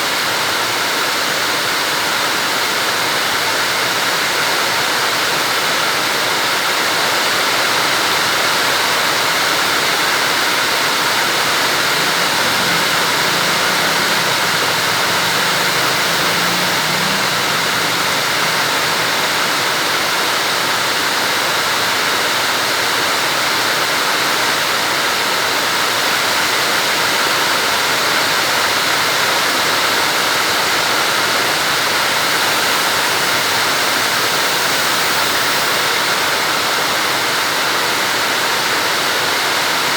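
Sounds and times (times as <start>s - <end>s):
heavy rain pouring: 7.8s - 23.0s, 24.2s - 38.2s.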